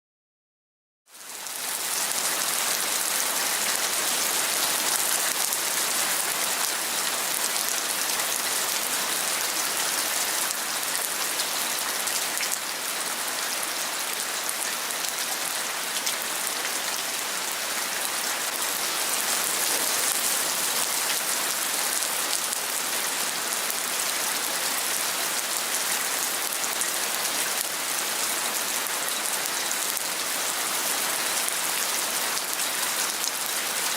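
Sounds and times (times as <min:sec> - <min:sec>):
heavy rain falling: 0:01.2 - 0:33.9.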